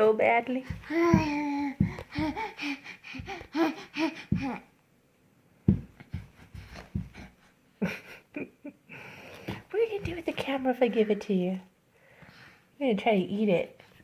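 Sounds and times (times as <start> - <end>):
baby making breathy sounds: 0.7 - 4.7.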